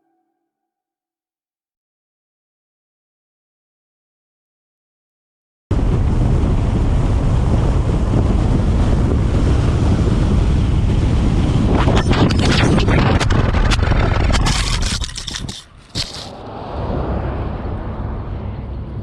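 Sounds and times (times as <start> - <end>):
wind buffeting microphone: 5.7 - 19.0
sharp clicks and scrapes: 11.8 - 16.4.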